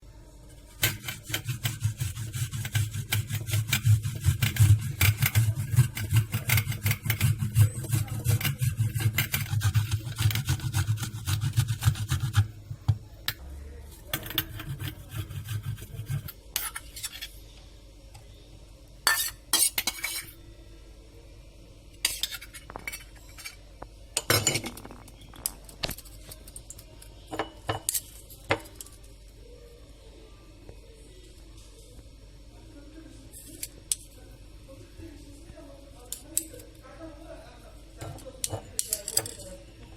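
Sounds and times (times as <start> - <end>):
ginger scraping on metal grater: 0.8 - 12.5, 14.2 - 16.9
kitchen utensils clinking: 24.2 - 28.7.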